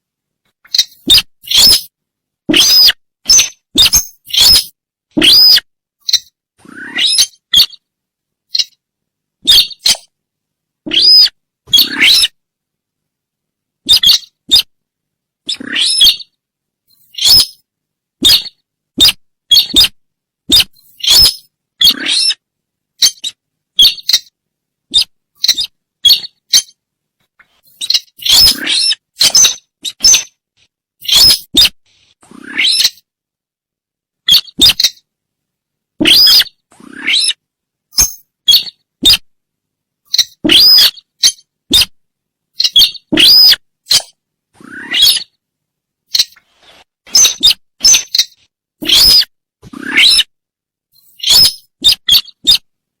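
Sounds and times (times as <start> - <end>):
high-pitched bird lure calls: 0.7 - 1.9, 2.5 - 6.3, 8.5 - 8.8, 9.5 - 10.1, 17.1 - 17.6, 20.5 - 22.4, 27.8 - 30.3, 31.0 - 31.5, 36.0 - 37.4, 38.0 - 39.2, 40.1 - 41.9, 42.6 - 44.1, 44.8 - 45.3, 47.2 - 50.3, 51.1 - 52.6.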